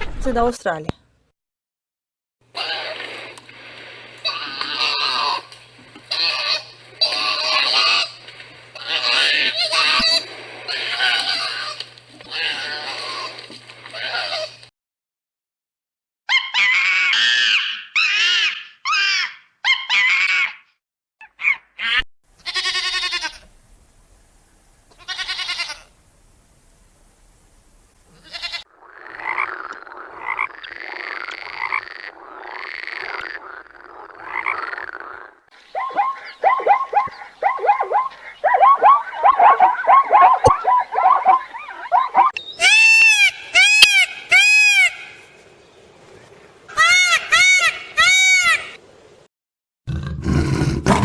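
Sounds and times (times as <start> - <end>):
animal calls: 2.5 - 3.3, 4.2 - 14.6, 16.3 - 23.3, 29.2 - 44.2, 49.9 - 51.0
chorus of rapid croaking: 2.6 - 3.3, 4.2 - 14.5, 28.7 - 35.4, 49.9 - 51.0.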